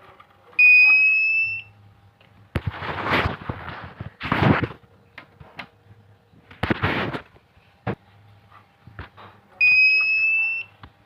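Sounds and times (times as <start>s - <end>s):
inverter alarm beep: 0.6s - 1.8s, 9.6s - 10.8s.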